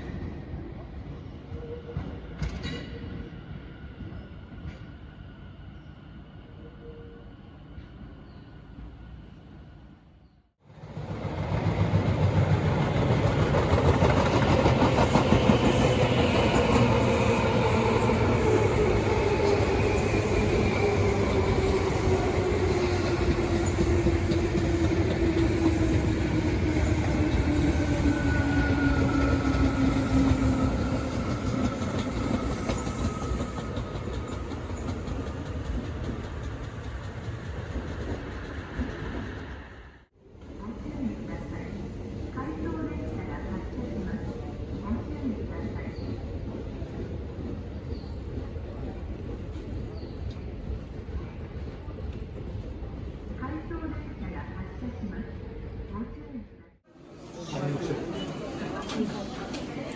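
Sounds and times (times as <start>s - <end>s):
train wheels rumbling on rail: 10.7s - 56.0s.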